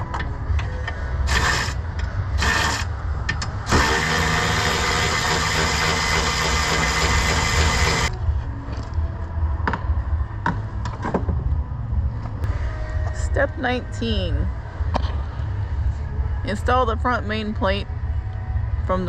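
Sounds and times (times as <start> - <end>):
constant low rumble: 0.0 - 19.0
power tool running: 1.2 - 1.8, 2.4 - 2.9, 3.7 - 8.1.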